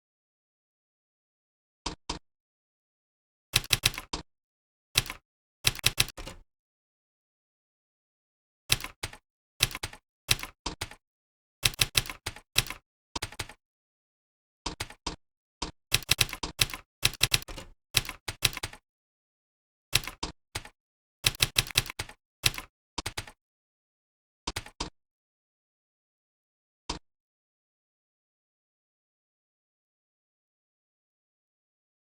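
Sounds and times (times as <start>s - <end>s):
computer keyboard typing: 3.6s - 4.2s, 5.0s - 6.4s, 8.7s - 11.0s, 11.6s - 13.6s, 14.7s - 15.2s, 15.9s - 18.8s, 20.0s - 23.4s, 24.5s - 24.9s.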